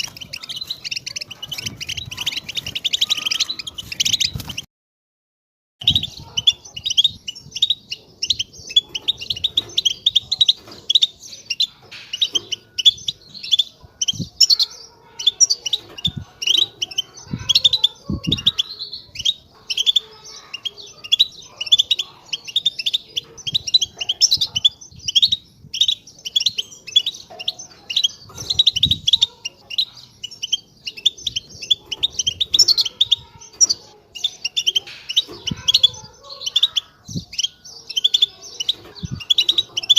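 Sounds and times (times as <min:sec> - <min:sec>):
bird twittering song: 0:00.0 - 0:04.7, 0:05.8 - 0:39.9.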